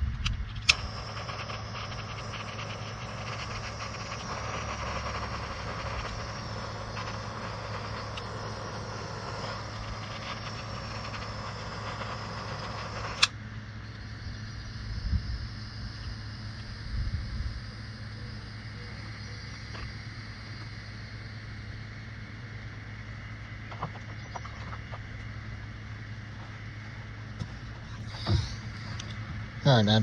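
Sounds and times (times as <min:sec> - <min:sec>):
torch click: 0:00.2 - 0:14.5
torch flame hissing: 0:00.4 - 0:24.0, 0:27.2 - 0:30.0.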